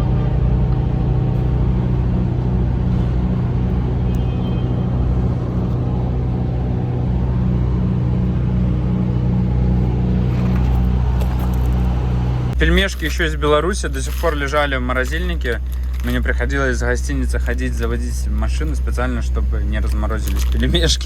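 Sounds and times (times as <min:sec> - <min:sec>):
diesel truck engine idling: 0:00.0 - 0:21.0.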